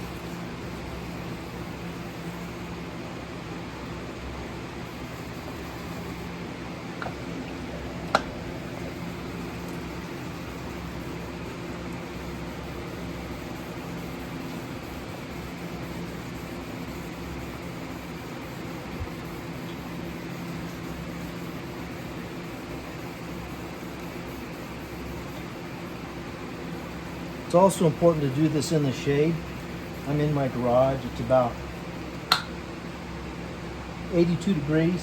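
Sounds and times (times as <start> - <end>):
fan humming: 0.0 - 35.0
sharp click: 32.3 - 32.5.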